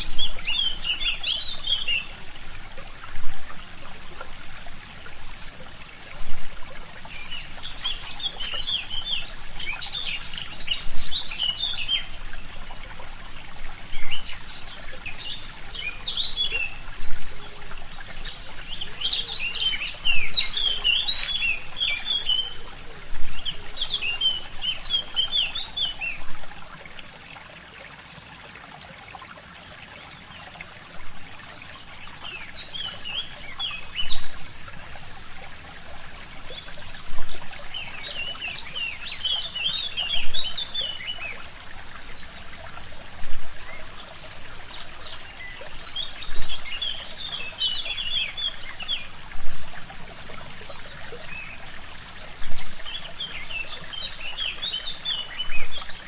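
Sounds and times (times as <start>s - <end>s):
songbird chirping: 0.0s - 13.1s, 13.8s - 26.4s
stream trickling: 0.0s - 56.0s.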